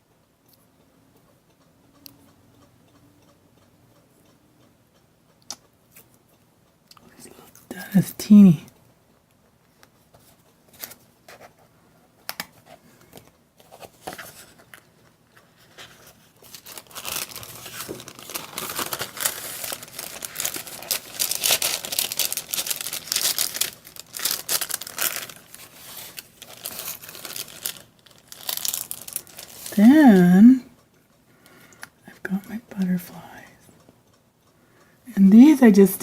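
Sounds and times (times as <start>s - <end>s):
materials crinkling and rustling: 12.3s - 30.0s.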